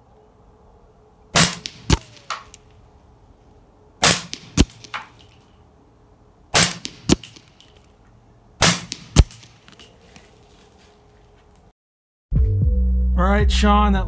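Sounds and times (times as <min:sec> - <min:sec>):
suppressed gunshots: 0:01.4 - 0:02.6, 0:04.0 - 0:05.4, 0:06.5 - 0:07.8, 0:08.6 - 0:10.3
sharp crack: 0:01.4 - 0:02.8, 0:04.0 - 0:05.5, 0:06.5 - 0:07.9, 0:08.6 - 0:10.4.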